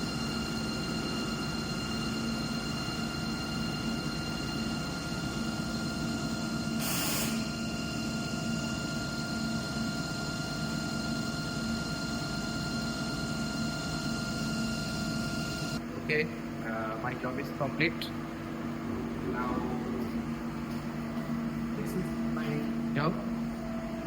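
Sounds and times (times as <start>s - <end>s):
machine whine tones: 0.0s - 15.8s
lathe machine hum: 0.0s - 24.0s.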